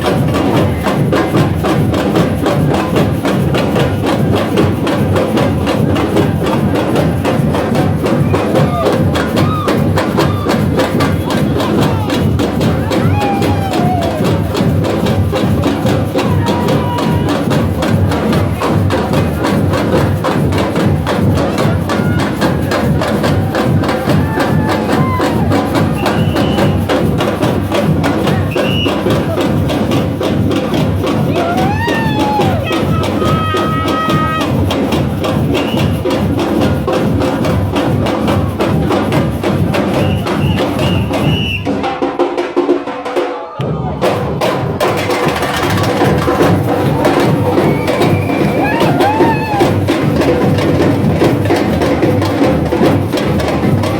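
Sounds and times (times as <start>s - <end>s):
loud music with fast beat: 0.0s - 40.0s, 43.8s - 53.9s.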